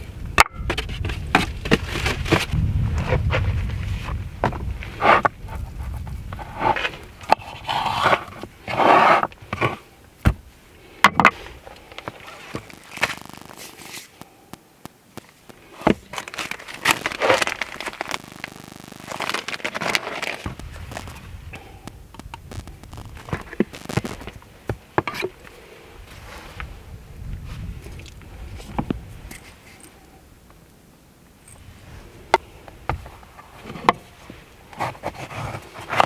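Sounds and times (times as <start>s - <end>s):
sharp cracks and clicks: 12.6s - 21.2s
scraping and rustling: 15.2s - 21.3s.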